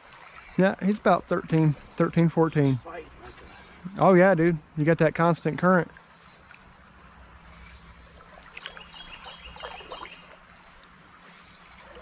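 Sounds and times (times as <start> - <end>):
creek water running: 0.0 - 12.0
fish splashing: 7.5 - 10.7.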